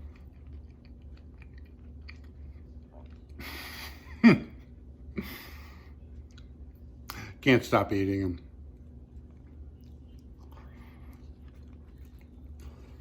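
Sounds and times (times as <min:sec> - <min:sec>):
person chewing: 0:00.0 - 0:03.7, 0:08.7 - 0:13.0.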